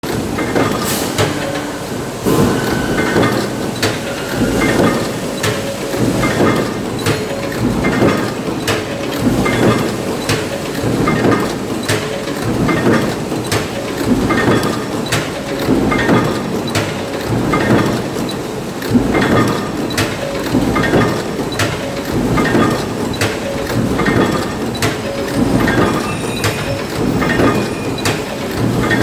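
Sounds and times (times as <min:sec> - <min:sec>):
industrial machine clanking: 0:00.0 - 0:29.0.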